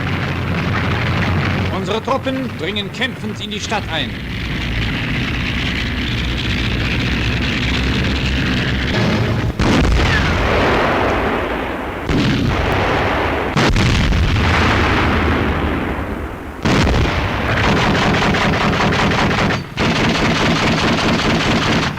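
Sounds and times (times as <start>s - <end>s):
explosions: 0.0s - 20.1s
gunfire: 8.9s - 21.9s
rapid machine-gun fire: 16.6s - 21.9s.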